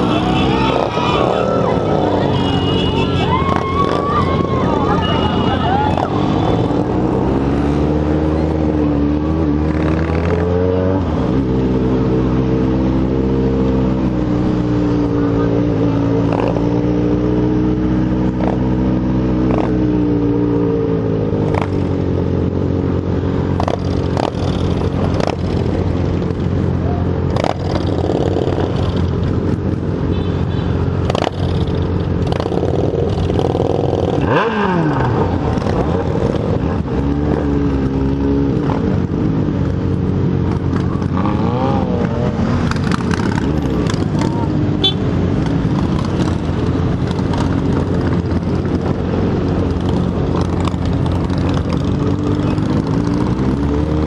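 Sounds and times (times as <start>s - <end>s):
motorcycle engine running: 11.0s - 54.0s.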